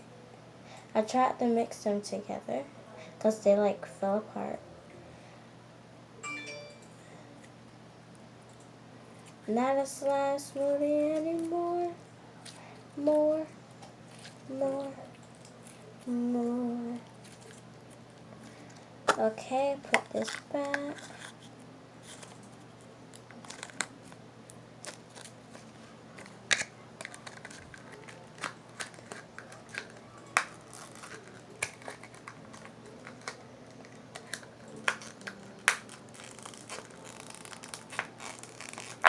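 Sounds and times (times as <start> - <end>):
faint steady hum: 0.0 - 39.0
slime and plastic tubs crinkling: 23.2 - 24.2, 24.8 - 39.0.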